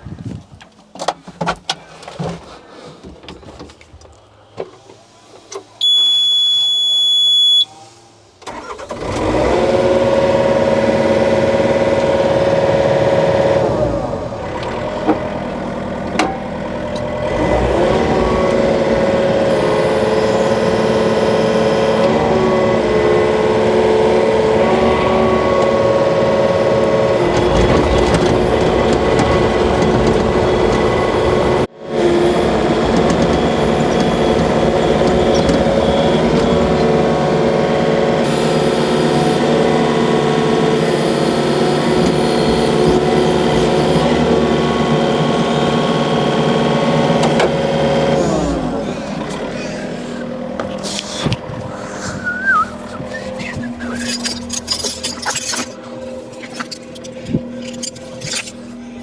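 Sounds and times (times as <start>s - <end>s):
electronic beep: 5.8s - 7.7s
engine starting and running: 7.4s - 59.0s.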